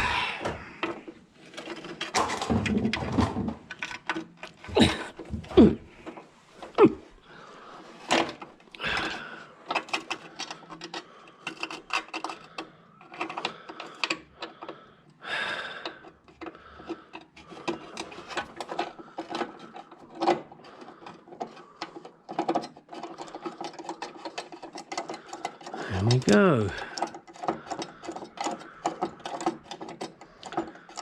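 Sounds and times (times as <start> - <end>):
small metal parts clicking: 8.3 - 14.8, 15.9 - 31.0.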